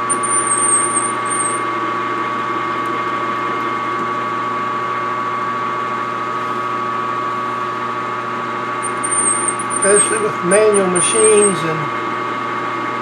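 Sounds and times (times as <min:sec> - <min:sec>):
metal lathe whining: 0:00.0 - 0:01.7, 0:08.8 - 0:11.9
high warbling squeal: 0:08.8 - 0:11.7.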